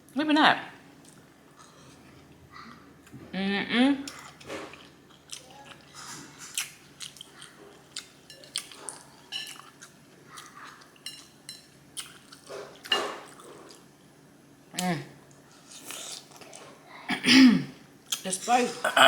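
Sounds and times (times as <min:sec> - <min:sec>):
person chewing food: 0:01.0 - 0:02.4, 0:04.1 - 0:13.9, 0:15.3 - 0:16.8.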